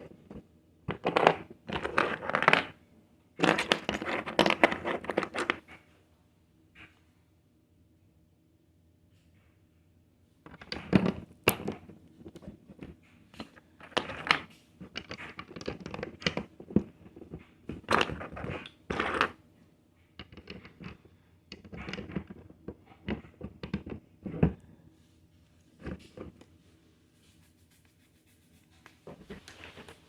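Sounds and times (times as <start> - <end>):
plastic pieces clicking and rattling: 3.4 - 5.6, 10.5 - 11.9, 12.8 - 19.4, 20.2 - 24.6.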